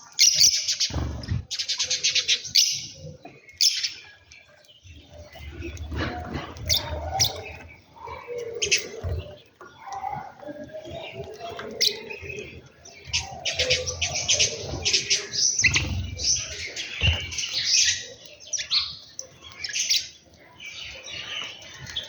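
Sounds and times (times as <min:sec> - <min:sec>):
small birds chirping: 0:00.0 - 0:22.0.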